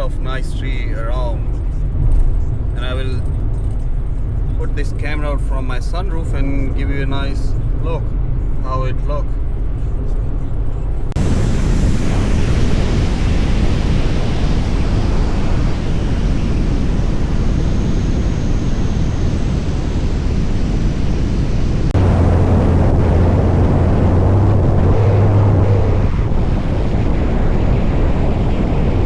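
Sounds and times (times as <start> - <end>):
road noise: 0.0 - 29.0
steady low hum: 0.0 - 29.0
wind roaring over microphone: 0.0 - 29.0.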